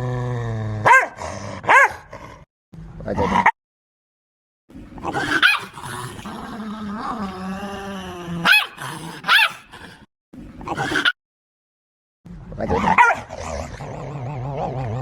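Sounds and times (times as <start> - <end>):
dog growling and snarling: 0.0 - 2.5, 4.7 - 11.2, 12.6 - 15.0
dog barking: 0.8 - 2.1, 5.1 - 6.5, 8.4 - 10.0, 12.9 - 13.3.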